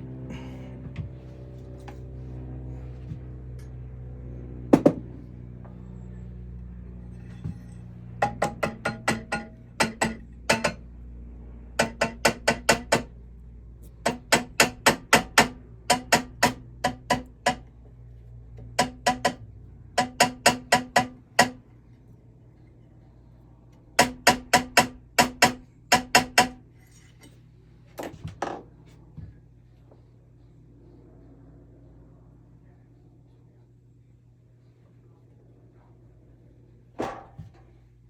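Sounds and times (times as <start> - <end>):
hammer tapping metal: 7.6 - 10.8, 11.8 - 13.1, 13.9 - 17.7, 18.6 - 21.6, 24.0 - 26.6.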